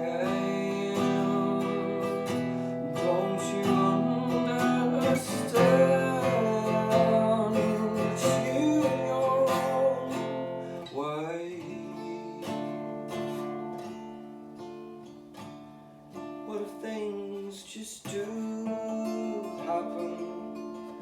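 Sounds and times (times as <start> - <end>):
person singing: 0.0 - 12.9
instrumental music: 0.0 - 17.4.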